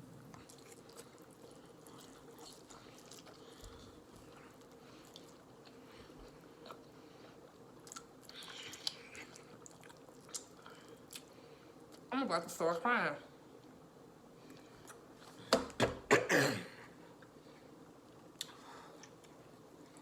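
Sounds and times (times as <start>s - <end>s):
faint chewing noodles: 0.2s - 12.1s.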